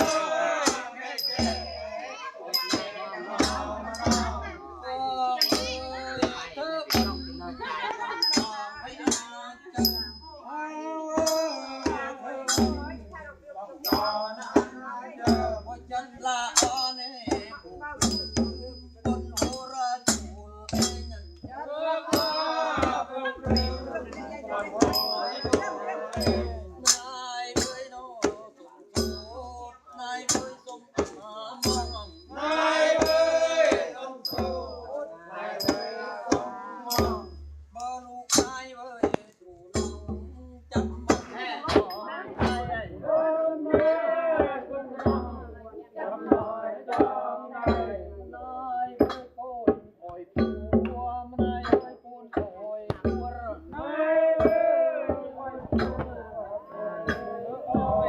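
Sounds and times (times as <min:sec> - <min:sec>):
sharp percussion strikes: 0:00.0 - 0:10.6, 0:11.2 - 0:13.2, 0:13.8 - 0:28.4, 0:29.0 - 0:45.6, 0:50.4 - 0:58.0
voices singing: 0:00.0 - 0:58.0
small cymbals ringing: 0:01.2 - 0:01.8, 0:11.2 - 0:12.0, 0:13.8 - 0:14.7, 0:16.6 - 0:19.8, 0:24.9 - 0:27.0
deep drum beat: 0:02.6 - 0:10.4, 0:11.2 - 0:58.0.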